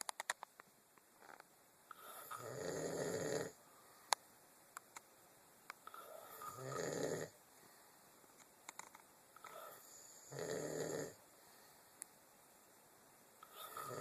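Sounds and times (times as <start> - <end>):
man snoring: 1.9 - 3.6, 5.9 - 7.4, 9.5 - 11.2, 13.4 - 14.0.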